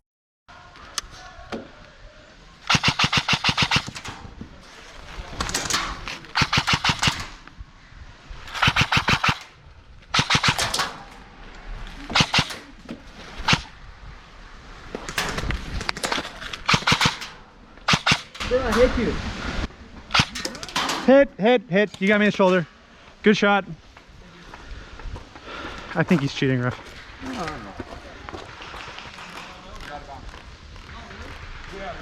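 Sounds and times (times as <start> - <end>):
airsoft guns firing bursts: 2.7 - 4.2, 5.4 - 7.4, 8.5 - 11.0, 12.1 - 12.7, 13.4 - 13.7, 16.0 - 18.4, 20.1 - 20.4.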